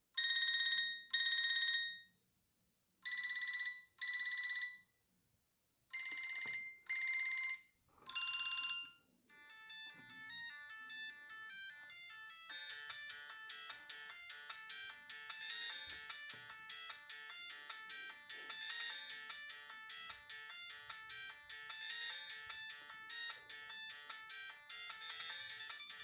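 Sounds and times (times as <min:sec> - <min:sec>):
phone ringing tone: 0:00.2 - 0:02.1, 0:03.0 - 0:05.0, 0:05.9 - 0:26.0
melody ringtone of quick notes: 0:09.3 - 0:26.0.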